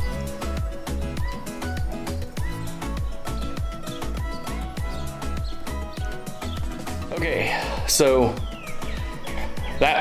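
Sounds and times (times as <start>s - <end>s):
kick drum: 0.0s - 7.3s
electronic music with steady beat: 0.0s - 10.0s.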